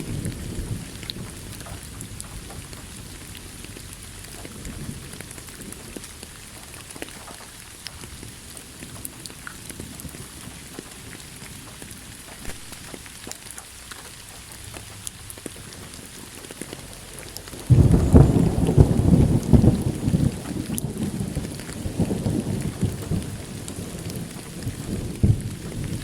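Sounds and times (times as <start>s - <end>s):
low thunderclap rumbling: 0.0s - 6.7s, 16.9s - 26.0s
steady rain: 0.0s - 26.0s.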